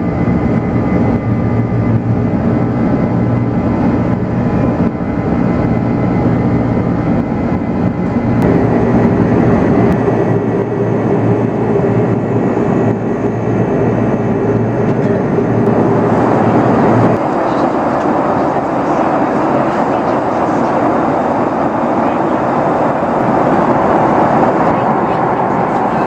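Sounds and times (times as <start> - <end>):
jet engines rumbling: 0.0 - 26.0
steady hum: 0.0 - 26.0.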